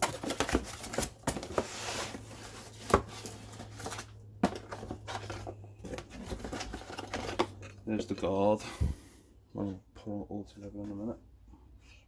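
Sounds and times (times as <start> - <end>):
packaging rustling: 0.0 - 7.8.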